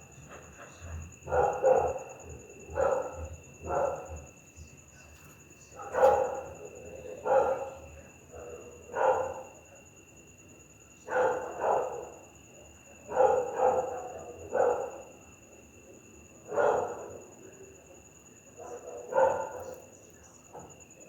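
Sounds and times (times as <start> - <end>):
dog barking: 0.7 - 4.3, 5.8 - 9.6, 11.0 - 12.3, 13.0 - 15.2, 16.4 - 17.3, 18.6 - 19.9.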